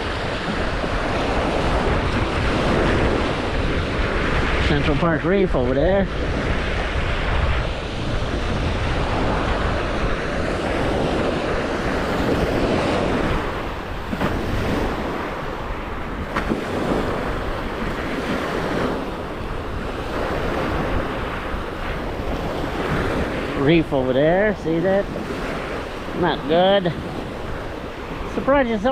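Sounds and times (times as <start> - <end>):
surf washing onto beach: 0.0 - 28.9
wind buffeting microphone: 0.0 - 28.9.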